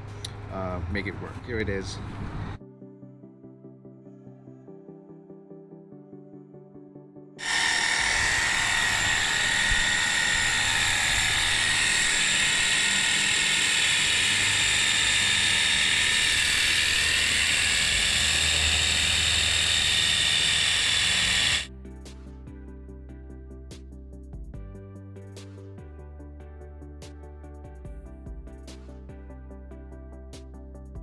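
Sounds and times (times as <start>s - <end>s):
pressure washer motor whine: 7.4s - 21.7s.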